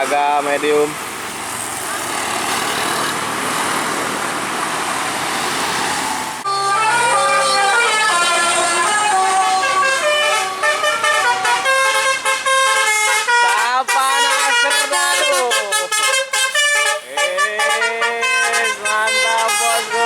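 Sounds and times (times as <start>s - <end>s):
traffic road noise: 0.0s - 20.0s
bus multi-tone air horn melody: 6.5s - 20.0s.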